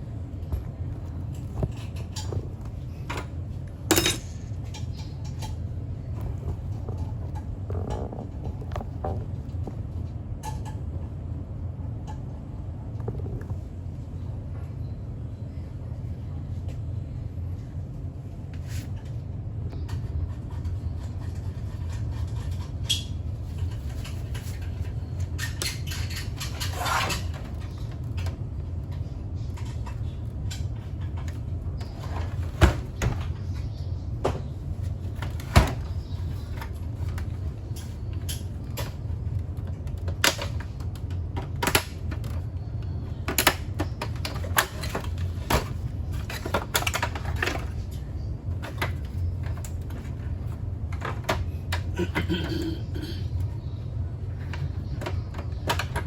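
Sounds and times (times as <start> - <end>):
steady low hum: 0.0 - 56.0
tools and parts clicking and knocking: 1.3 - 5.6, 43.3 - 50.1.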